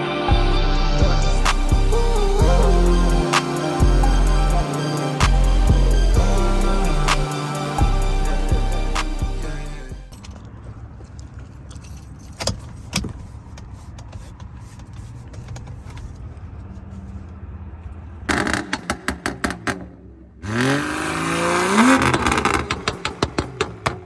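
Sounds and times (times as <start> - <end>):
engine cranking and starting: 18.3 - 24.0.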